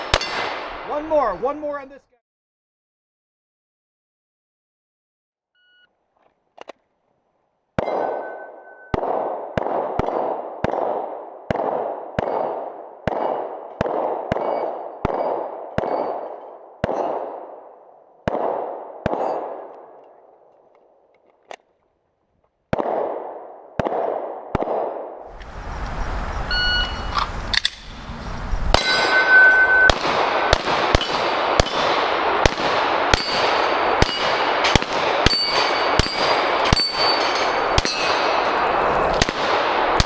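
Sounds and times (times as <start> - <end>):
pistol shots echoing: 0.0 - 0.9, 7.8 - 20.5, 22.7 - 25.2, 28.7 - 40.0.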